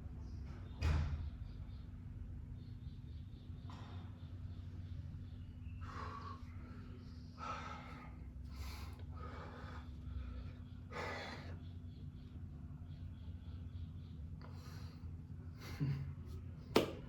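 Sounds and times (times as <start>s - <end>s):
steady low hum: 0.0s - 17.0s
man breathing forcefully: 7.3s - 11.6s.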